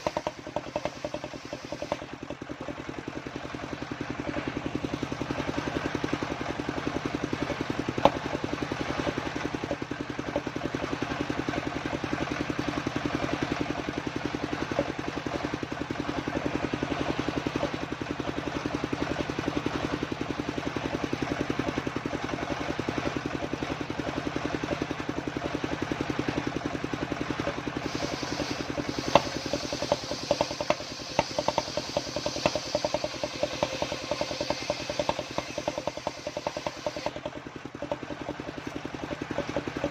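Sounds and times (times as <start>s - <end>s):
irregular clattering ticks: 0.0s - 2.9s, 28.0s - 39.9s
sawmill engine pulsing hum: 0.0s - 39.9s
high hiss: 27.8s - 37.1s.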